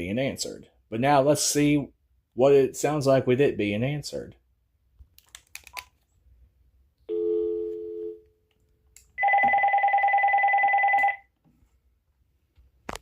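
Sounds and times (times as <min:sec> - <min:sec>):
cordless phone warbling ring: 0:09.2 - 0:11.3
telephone dial tone: 0:09.2 - 0:11.3.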